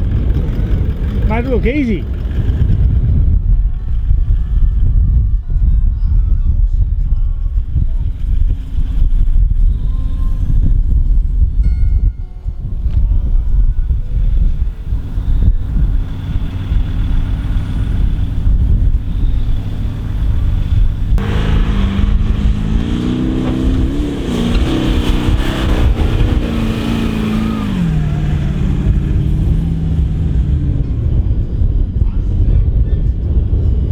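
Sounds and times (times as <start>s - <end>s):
off-road vehicle engine revving: 0.0s - 3.0s, 8.0s - 11.1s, 12.8s - 32.0s
heavy low rumble: 0.0s - 33.9s.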